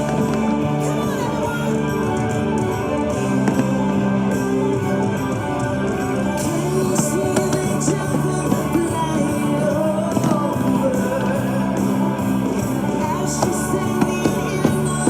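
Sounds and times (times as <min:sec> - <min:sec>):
music with singing: 0:00.0 - 0:15.0.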